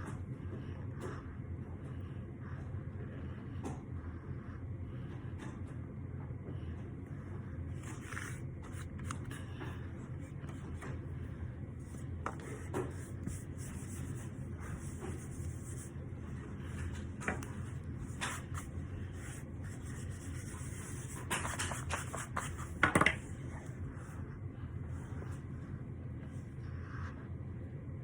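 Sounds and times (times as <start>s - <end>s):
soft crackles and rubbing of powder: 0.0s - 28.0s.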